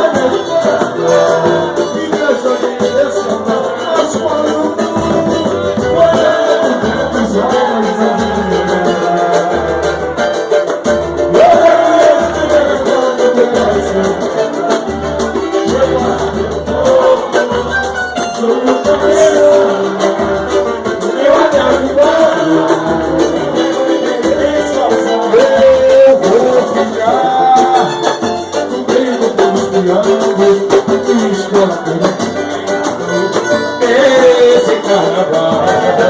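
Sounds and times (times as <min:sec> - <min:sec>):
percussion with low beat: 0:00.0 - 0:36.0
person singing melody: 0:00.0 - 0:36.0
string accompaniment: 0:00.0 - 0:36.0.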